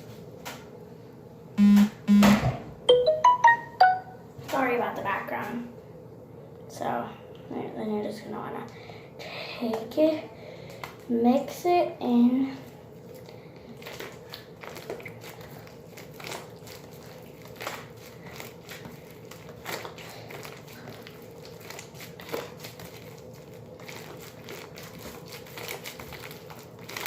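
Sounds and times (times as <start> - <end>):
faint steady hum: 0.0 - 27.0
slime squished by hand: 13.1 - 27.0.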